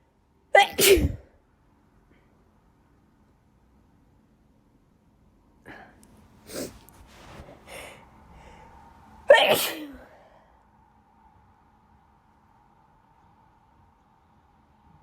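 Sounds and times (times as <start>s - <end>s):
woman sneezing: 0.6s - 1.2s, 6.5s - 6.8s, 9.3s - 10.1s.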